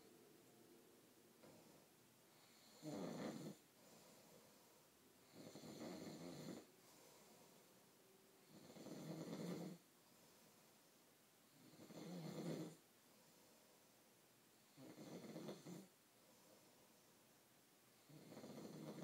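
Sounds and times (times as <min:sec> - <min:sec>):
man snoring faintly: 0:01.4 - 0:04.5, 0:05.2 - 0:07.6, 0:08.4 - 0:09.9, 0:11.5 - 0:12.8, 0:14.6 - 0:15.9, 0:18.0 - 0:19.0.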